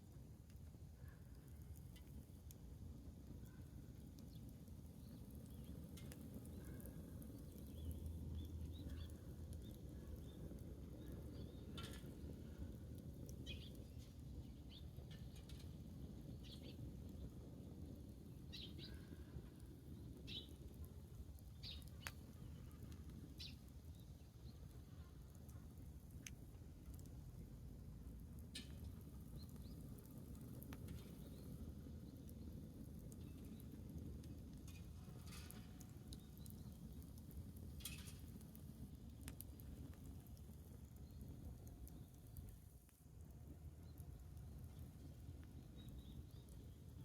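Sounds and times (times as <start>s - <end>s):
bonfire crackles: 0.0s - 47.0s
small birds chirping: 4.2s - 15.6s, 16.3s - 17.4s, 18.3s - 20.7s, 21.4s - 25.6s, 28.6s - 32.6s, 43.8s - 47.0s.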